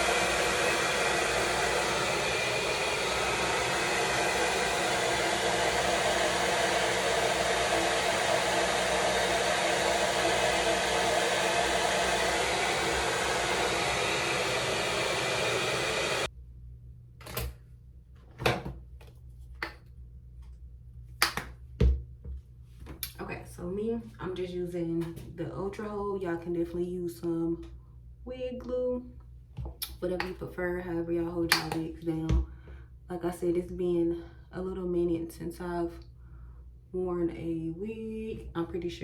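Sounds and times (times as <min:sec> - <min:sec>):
hair dryer blowing: 0:00.0 - 0:16.3.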